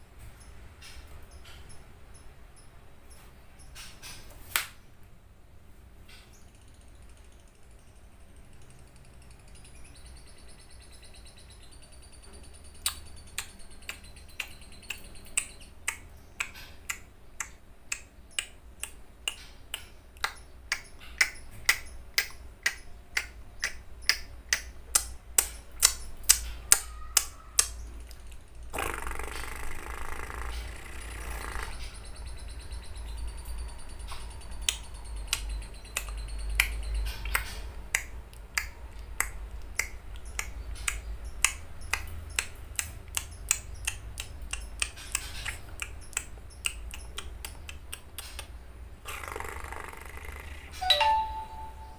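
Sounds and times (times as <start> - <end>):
lovebird ticking calls: 0.4 - 2.8, 6.0 - 51.9
harsh bird chattering: 8.3 - 51.7.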